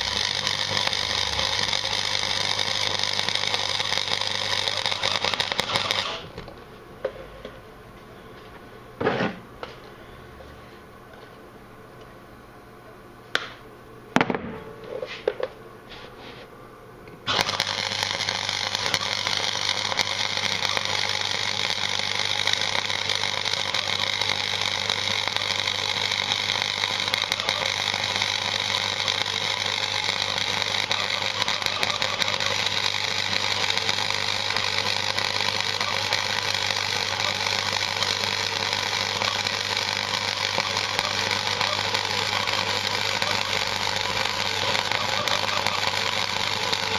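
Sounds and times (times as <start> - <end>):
welding arc crackling: 0.0 - 6.5, 17.2 - 46.9.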